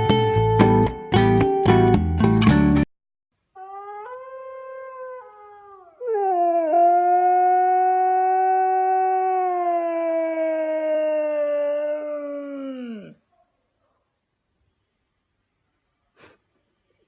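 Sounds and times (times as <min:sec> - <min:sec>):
dog howling: 0:03.6 - 0:13.2.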